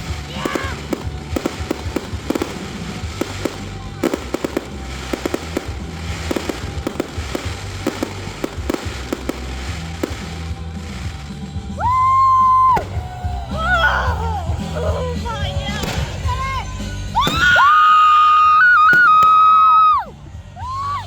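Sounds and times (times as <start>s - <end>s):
fireworks popping and crackling: 0.0s - 21.0s
music playing: 0.0s - 21.0s.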